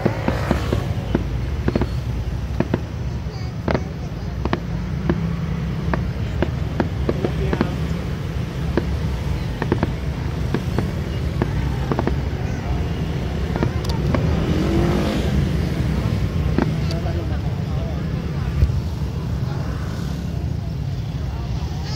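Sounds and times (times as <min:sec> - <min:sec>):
fireworks cracks and pops: 0:00.0 - 0:14.3, 0:16.2 - 0:17.3
steady low rumble: 0:00.0 - 0:21.9.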